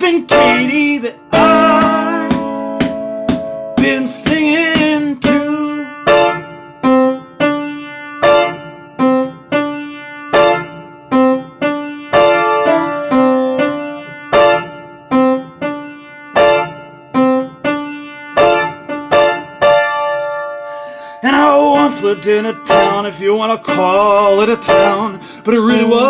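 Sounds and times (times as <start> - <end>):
piano chords: 0.0 - 26.0.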